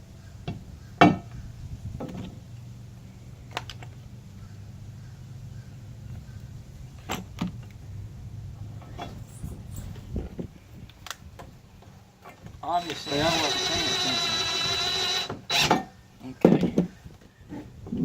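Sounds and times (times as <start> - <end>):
low steady hum: 0.0 - 12.1.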